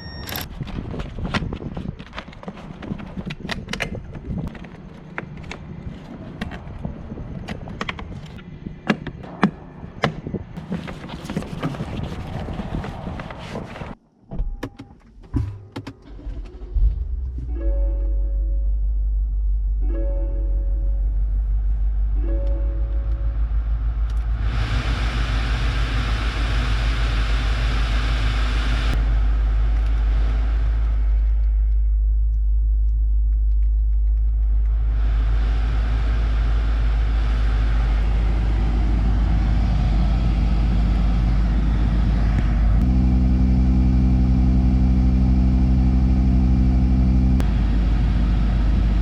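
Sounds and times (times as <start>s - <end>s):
low rumble: 16.0s - 49.0s
pitched hum with overtones: 16.1s - 49.0s
car blower fan air rush: 23.0s - 31.9s, 34.4s - 49.0s.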